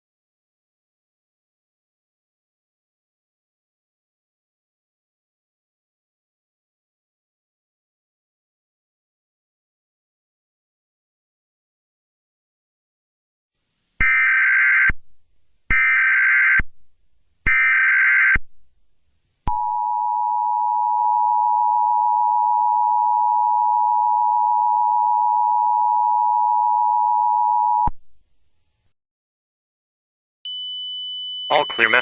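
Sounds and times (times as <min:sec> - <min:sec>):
two-tone alert signal: 0:31.5 - 0:32.0.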